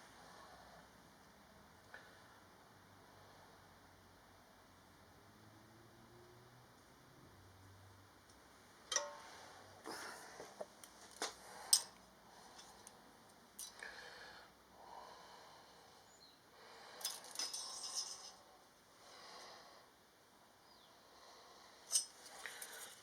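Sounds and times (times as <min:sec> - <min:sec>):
metal parts clinking: 0:17.0 - 0:18.4.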